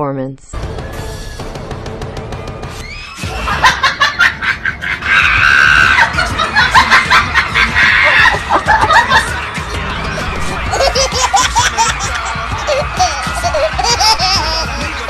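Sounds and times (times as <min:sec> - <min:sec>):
people laughing: 0:03.2 - 0:15.0.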